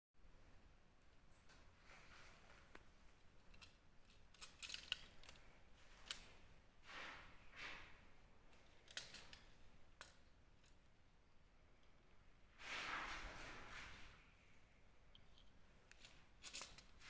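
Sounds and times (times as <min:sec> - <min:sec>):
scraping rustles: 0:12.6 - 0:14.2.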